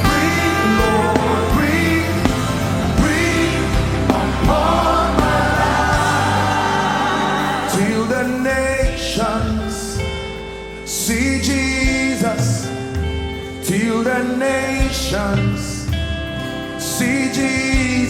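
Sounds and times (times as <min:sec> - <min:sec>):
choir singing: 0:00.0 - 0:08.7
band playing bass line: 0:00.0 - 0:18.0.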